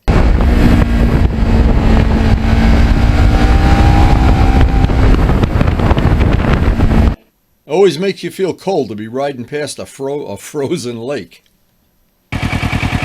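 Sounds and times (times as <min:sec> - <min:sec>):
motorcycle engine running: 0:00.0 - 0:07.2, 0:12.3 - 0:13.0
wind rush over microphone: 0:00.0 - 0:07.2.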